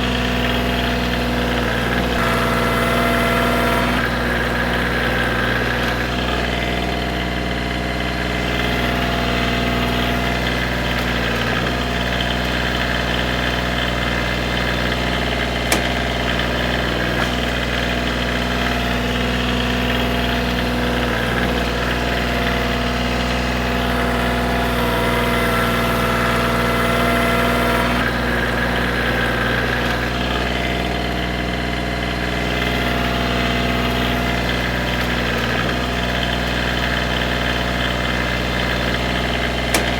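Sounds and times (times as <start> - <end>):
tractor diesel engine running: 0.0 - 39.9
sharp click: 15.7 - 16.0.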